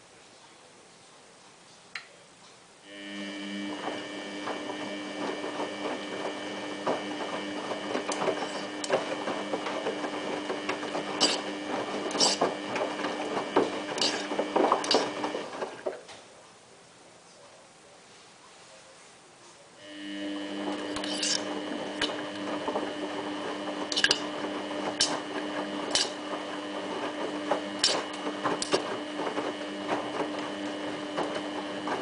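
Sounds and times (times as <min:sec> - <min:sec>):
washing machine motor whine: 0:02.8 - 0:16.1, 0:19.8 - 0:32.0
water and clothes splashing in drum: 0:03.6 - 0:16.3, 0:20.8 - 0:32.0.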